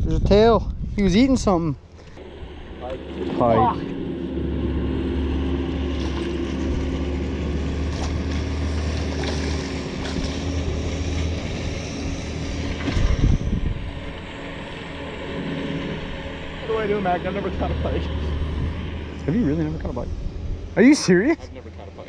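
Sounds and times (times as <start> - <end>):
wind noise on microphone: 0.0 - 5.1, 10.0 - 14.3, 18.3 - 20.8
boat motor humming: 1.8 - 22.0.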